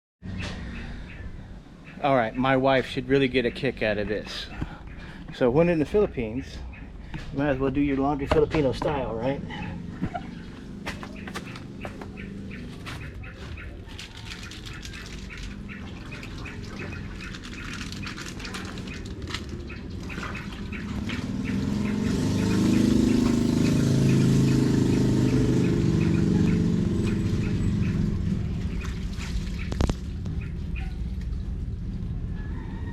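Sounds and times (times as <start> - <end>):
water sloshing in a basin: 13.9 - 23.3, 26.0 - 30.3.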